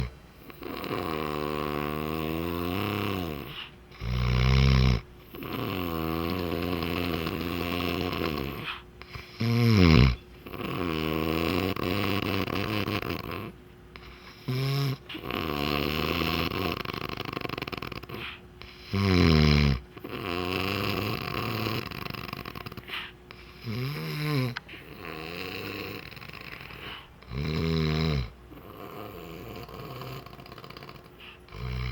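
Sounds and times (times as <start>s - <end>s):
loud snoring: 0.0s - 31.9s
out-breath with pitched tone: 22.6s - 25.0s, 26.1s - 27.4s, 30.9s - 31.9s.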